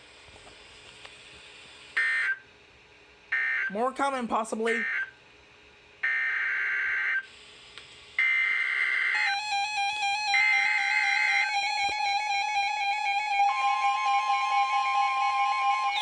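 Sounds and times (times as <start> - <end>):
synthesizer music with held tone: 9.2 - 16.0.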